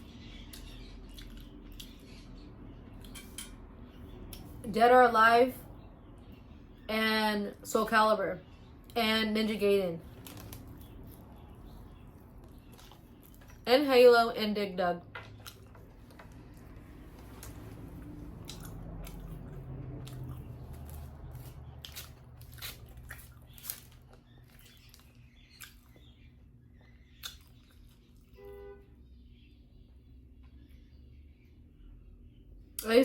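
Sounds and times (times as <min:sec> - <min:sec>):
chewing and wet mouth noises: 0:00.0 - 0:03.3, 0:10.0 - 0:13.7, 0:15.2 - 0:28.4
sharp clicks and crunches: 0:10.1 - 0:11.2.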